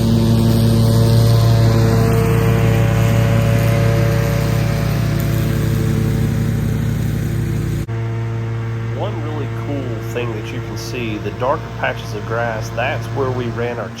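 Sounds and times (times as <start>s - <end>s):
riding lawn mower engine: 0.0s - 14.0s.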